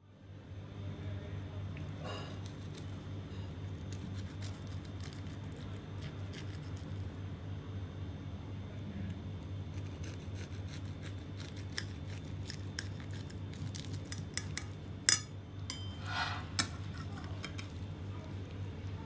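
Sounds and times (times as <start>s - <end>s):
steady low hum: 0.0s - 19.0s
utensils clicking against dishes: 14.0s - 17.8s
short scrape: 15.9s - 17.0s.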